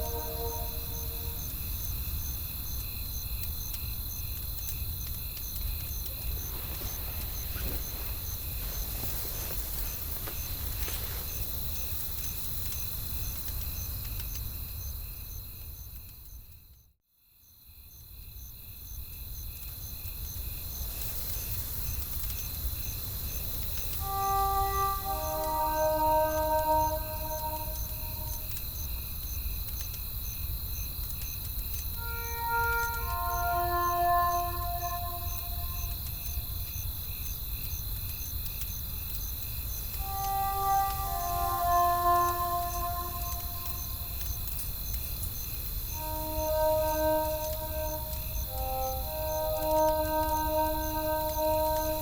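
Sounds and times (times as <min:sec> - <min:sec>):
steady high drone: 0:00.0 - 0:01.6, 0:24.0 - 0:28.5, 0:32.0 - 0:36.0, 0:40.0 - 0:44.2, 0:46.0 - 0:52.0
insects chirping: 0:00.0 - 0:16.4, 0:17.9 - 0:52.0.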